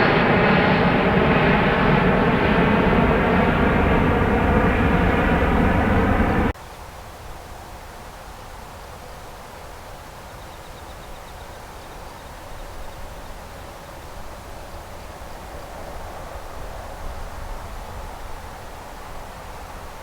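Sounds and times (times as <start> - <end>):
low rumble and hiss: 0.8 - 6.5.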